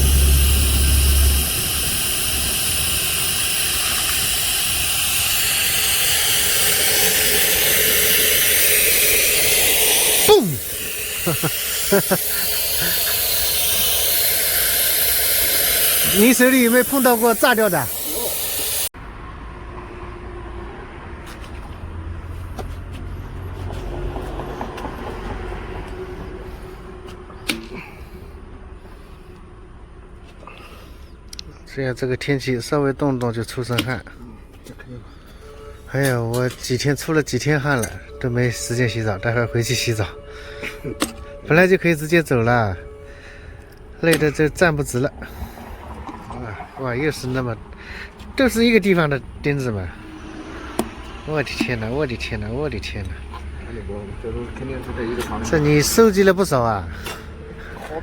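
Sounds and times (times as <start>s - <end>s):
low mechanical drone: 0.0s - 18.9s, 34.2s - 58.0s
compressed air hissing: 0.0s - 19.0s, 49.9s - 52.0s
low engine rumble: 0.0s - 20.0s.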